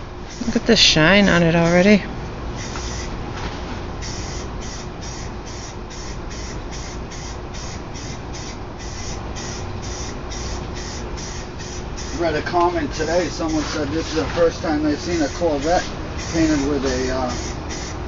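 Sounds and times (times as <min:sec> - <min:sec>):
steady low hum: 0:00.0 - 0:18.0
spray paint can hissing: 0:02.6 - 0:03.1, 0:04.0 - 0:12.4, 0:13.0 - 0:14.2, 0:15.0 - 0:18.0.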